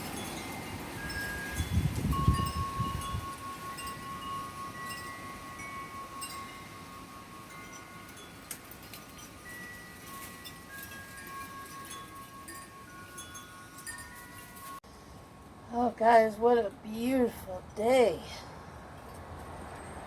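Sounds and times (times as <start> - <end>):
wind rumbling on microphone: 0.0 - 14.8
wind chimes ringing: 0.0 - 15.1.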